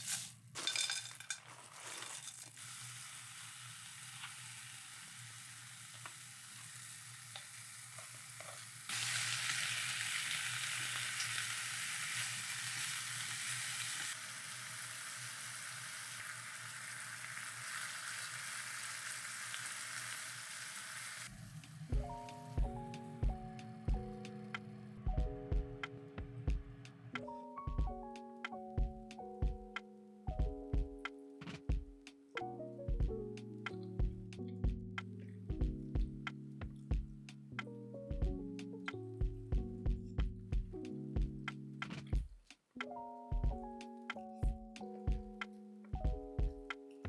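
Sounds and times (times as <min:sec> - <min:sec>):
stirring clicks and scrapes: 0:00.0 - 0:02.6
food sizzling in a pan: 0:00.0 - 0:22.6.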